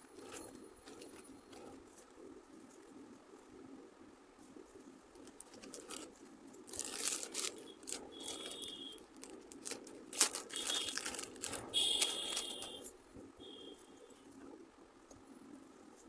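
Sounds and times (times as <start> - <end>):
plastic packaging crinkling: 5.1 - 13.8
plastic ripping: 5.2 - 12.9
high squeaks: 10.2 - 12.9.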